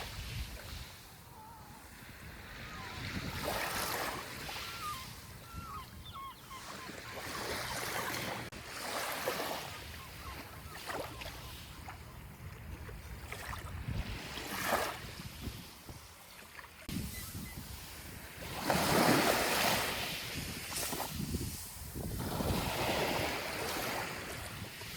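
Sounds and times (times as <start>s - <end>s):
wind: 0.0s - 24.9s
faint bird calls: 1.3s - 1.8s, 4.5s - 8.3s, 9.9s - 12.2s.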